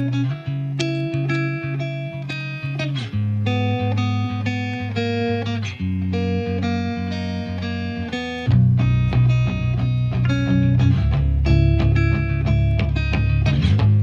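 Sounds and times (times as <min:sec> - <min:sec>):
plucked guitar notes: 0:00.0 - 0:14.0
bass line: 0:05.8 - 0:14.0.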